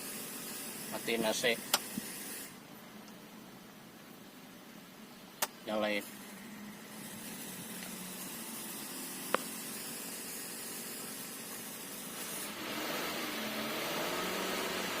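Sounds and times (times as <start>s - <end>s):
car engine idling: 2.6s - 12.2s
sharp click: 5.4s - 5.6s
compressor grinding: 6.0s - 15.0s.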